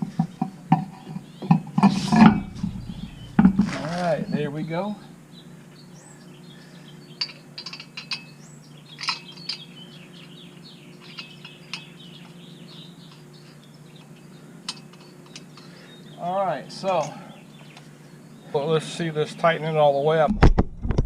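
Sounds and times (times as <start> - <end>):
steady low hum: 0.0 - 19.4
birds chirping: 0.0 - 20.2
metal parts clinking: 1.8 - 4.6, 7.2 - 9.7, 11.0 - 12.0.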